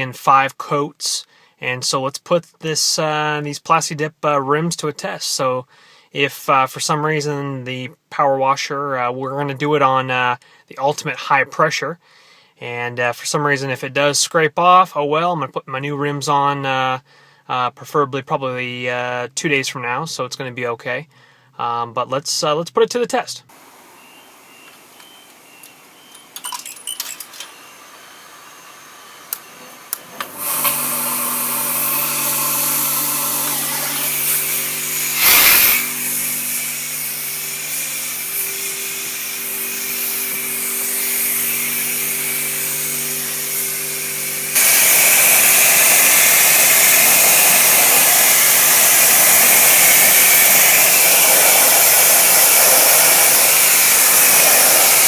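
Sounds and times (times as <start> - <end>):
pressure washer motor humming: 23.5 - 55.0
water jet spraying: 23.5 - 55.0.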